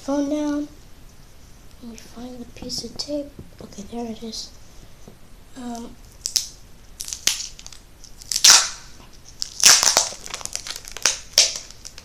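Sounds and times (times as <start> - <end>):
adhesive tape tearing off roll: 6.2 - 12.0.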